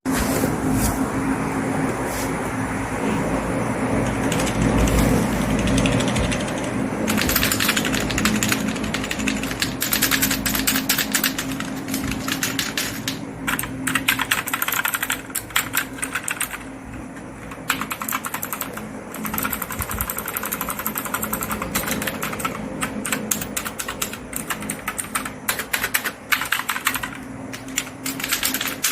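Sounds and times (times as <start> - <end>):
computer keyboard typing: 3.9 - 28.9.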